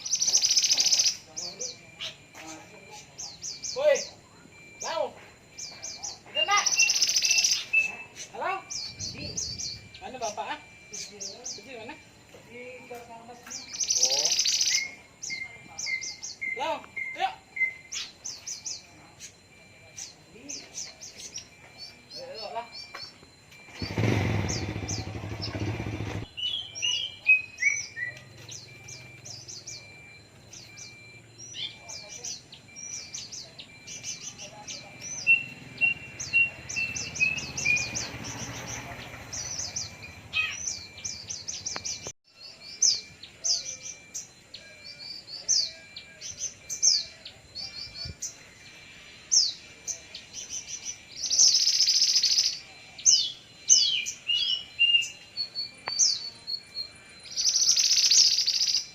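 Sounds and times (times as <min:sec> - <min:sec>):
bird singing high chirps: 0:00.0 - 0:58.9
harsh raspy bird call: 0:23.7 - 0:28.1, 0:34.9 - 0:41.8.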